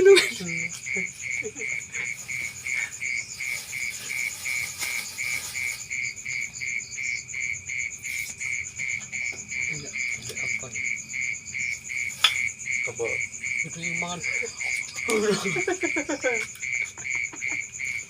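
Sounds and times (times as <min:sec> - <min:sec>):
frogs calling: 0:00.0 - 0:18.0
high pulsed insect call: 0:00.0 - 0:18.0.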